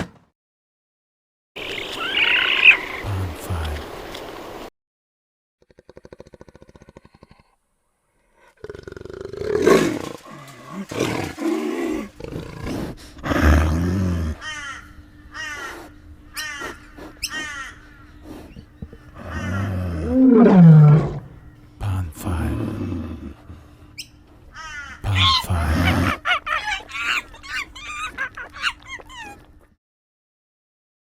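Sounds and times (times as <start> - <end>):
large animal roaring and growling: 8.6 - 14.4, 19.2 - 21.5, 22.4 - 23.5.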